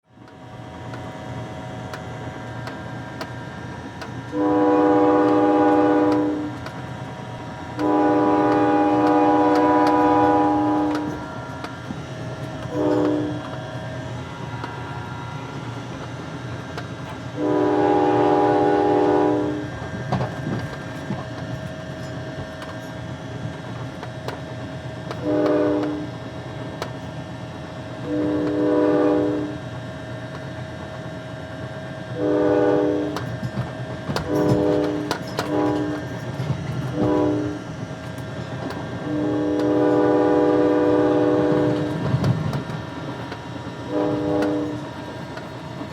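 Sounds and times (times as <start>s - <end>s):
passing train rumble: 0.0s - 45.9s
train horn blasts: 4.2s - 16.2s, 17.1s - 20.5s, 25.0s - 26.2s, 28.0s - 29.8s, 32.1s - 37.9s, 38.6s - 42.6s, 43.7s - 45.3s.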